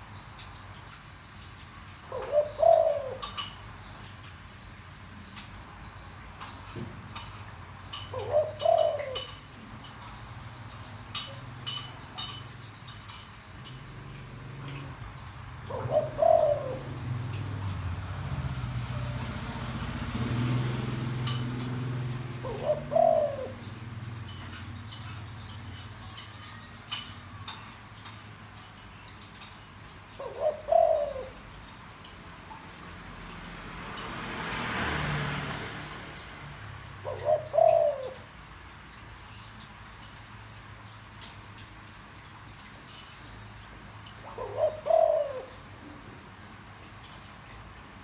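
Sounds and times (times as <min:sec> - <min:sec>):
dove cooing: 0:02.0 - 0:03.7, 0:07.9 - 0:28.0, 0:30.1 - 0:31.8, 0:36.4 - 0:38.6, 0:43.9 - 0:47.6
low engine rumble: 0:13.5 - 0:27.7.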